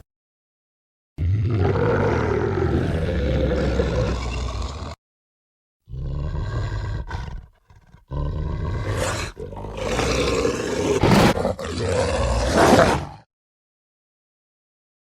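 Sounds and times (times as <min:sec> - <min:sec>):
growling monster roar: 0:01.2 - 0:05.0, 0:05.9 - 0:13.3.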